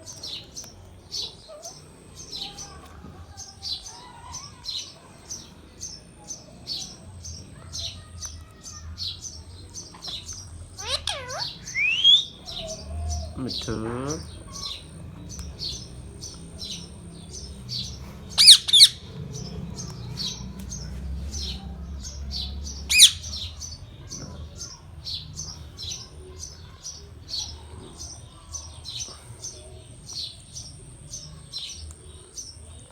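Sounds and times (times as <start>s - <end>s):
parakeet chirping: 10.0s - 26.8s
parakeet squawks: 10.7s - 20.4s, 22.4s - 23.6s.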